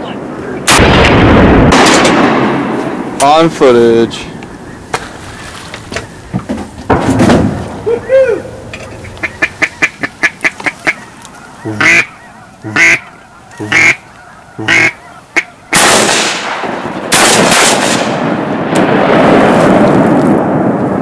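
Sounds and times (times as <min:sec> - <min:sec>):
duck quacking: 0:09.1 - 0:15.8.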